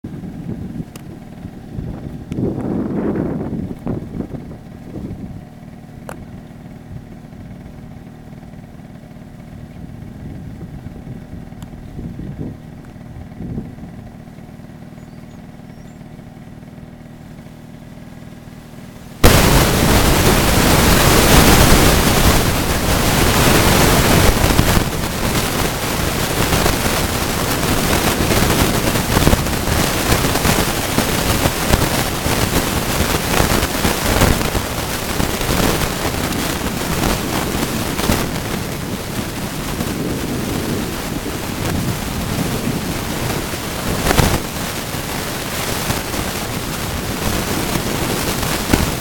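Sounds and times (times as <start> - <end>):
faint steady hum: 14.8 - 49.0
loud harsh crackling static: 19.2 - 49.0.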